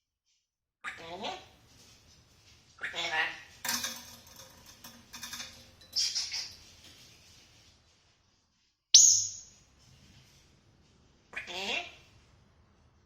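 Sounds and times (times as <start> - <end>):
sharp ringing sound: 9.0 - 9.6.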